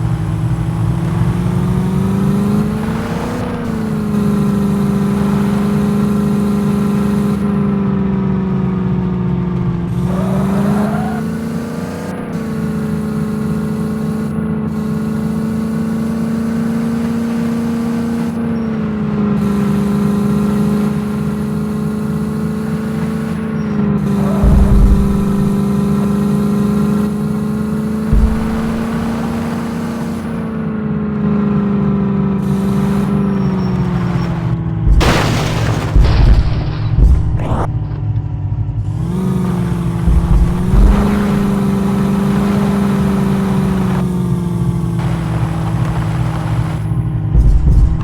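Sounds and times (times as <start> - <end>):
jeep engine running: 0.0 - 48.0
heavy low thumps: 24.4 - 25.6, 28.1 - 29.0, 34.7 - 38.2, 40.0 - 41.6, 47.2 - 48.0.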